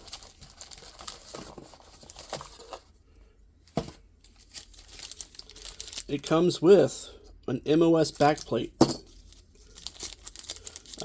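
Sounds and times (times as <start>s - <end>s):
packaging rustling and clicking: 0.0s - 2.8s, 9.1s - 11.0s.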